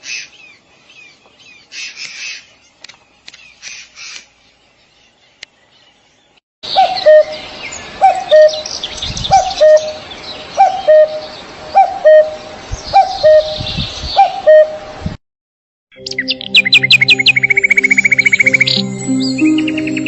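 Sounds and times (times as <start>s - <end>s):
high twittering bird chirps: 4.8s - 14.8s, 15.9s - 20.0s
low two-part bird call: 6.7s - 7.4s, 9.3s - 10.0s, 10.6s - 13.6s, 14.2s - 14.8s.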